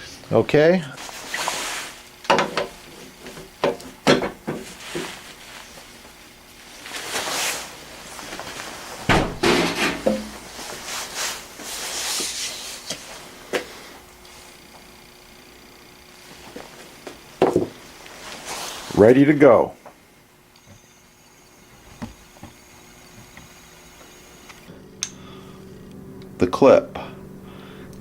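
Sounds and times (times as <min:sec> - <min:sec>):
rubbing wax on metal: 0:09.7 - 0:13.2.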